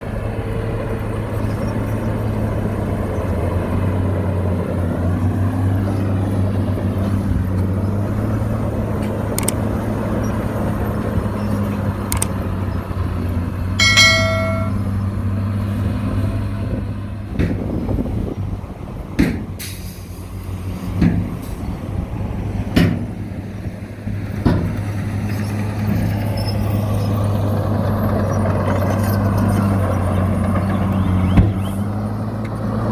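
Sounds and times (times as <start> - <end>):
diesel engine running: 0.0 - 32.9
sharp clicks: 9.4 - 9.6, 12.0 - 12.4
high-pitched tone: 13.8 - 14.9.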